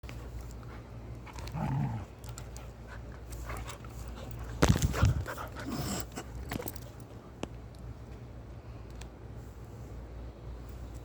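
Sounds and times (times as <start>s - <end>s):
dog panting: 2.5s - 6.2s.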